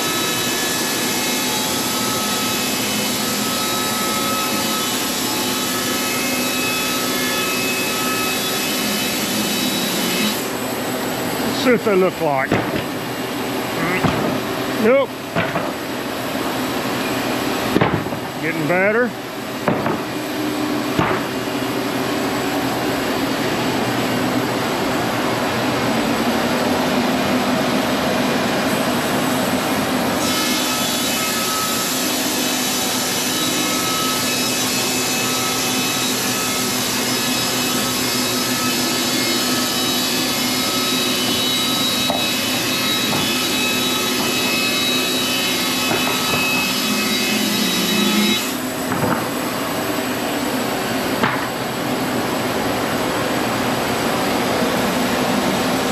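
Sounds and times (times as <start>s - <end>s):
sawmill machine running: 0.0s - 55.9s
saw whining: 30.2s - 48.7s.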